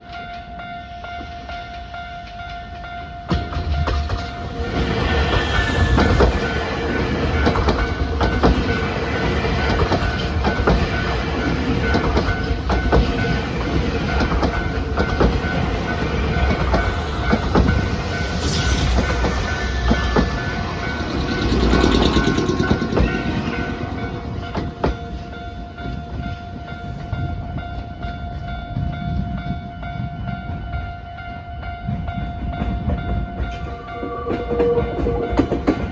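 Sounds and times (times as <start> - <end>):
crossing warning bell ringing: 0.0 - 35.9
train wheels clicking over rail joints: 3.2 - 28.9.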